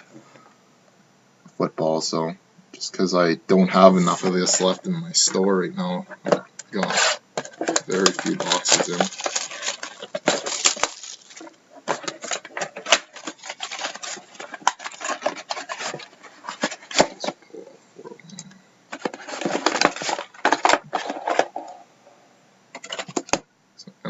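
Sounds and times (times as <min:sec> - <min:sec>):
plastic wrap crinkling: 0:06.7 - 0:17.3.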